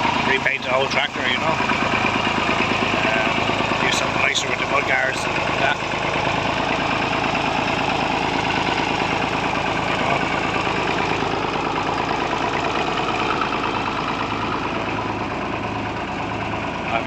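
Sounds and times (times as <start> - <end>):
diesel tractor engine idling: 0.0 - 17.0.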